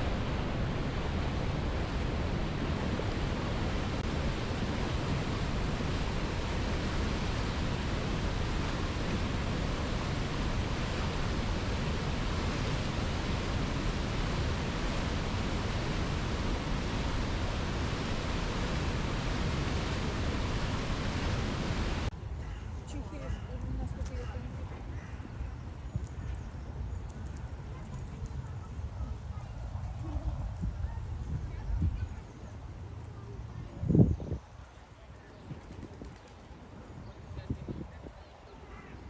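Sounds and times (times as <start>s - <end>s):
waterfall rushing: 0.0s - 22.1s.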